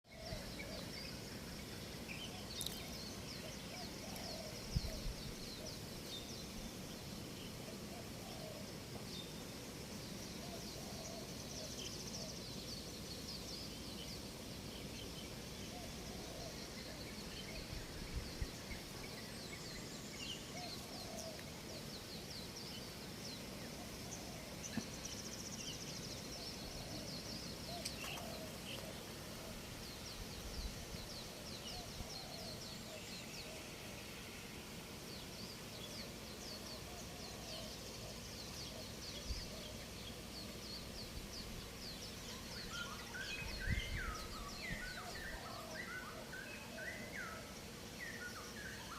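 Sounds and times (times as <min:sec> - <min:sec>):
birds chirping: 0:00.0 - 0:48.9.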